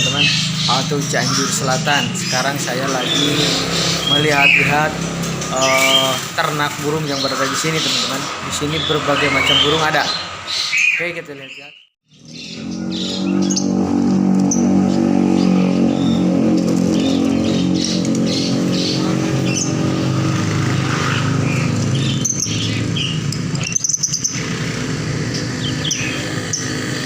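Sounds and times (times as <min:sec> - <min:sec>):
songbirds chirping: 0:00.0 - 0:27.0
small engine hum: 0:12.1 - 0:27.0.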